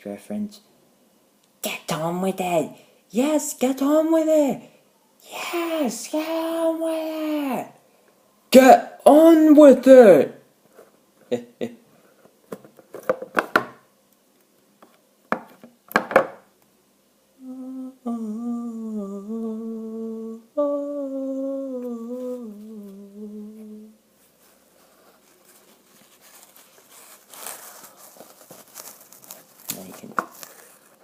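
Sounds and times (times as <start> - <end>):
man humming a tune: 17.4 - 24.0
packaging crinkling: 24.8 - 31.0.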